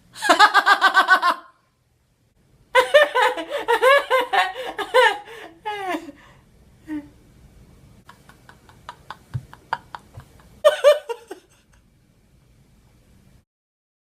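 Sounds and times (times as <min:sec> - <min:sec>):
high-pitched laughter: 0:08.6 - 0:11.6.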